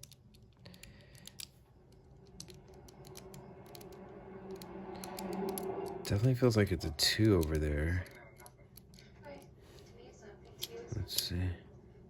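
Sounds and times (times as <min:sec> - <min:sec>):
padlock dials clicking: 0:00.0 - 0:05.7
low steady hum: 0:00.0 - 0:12.0.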